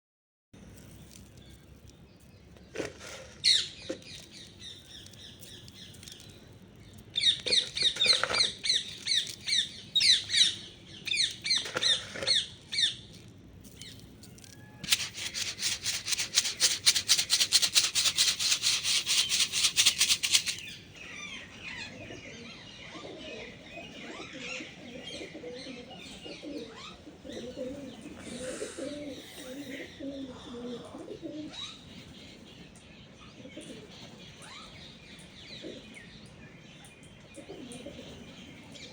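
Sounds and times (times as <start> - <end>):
wingbeats: 14.8 - 20.8
pigeon cooing: 22.0 - 31.8, 37.4 - 38.3.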